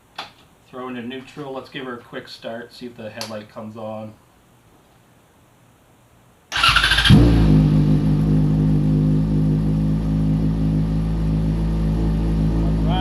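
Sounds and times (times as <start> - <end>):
electric starter cranking: 6.5 - 7.2
motorcycle engine idling: 6.6 - 13.0.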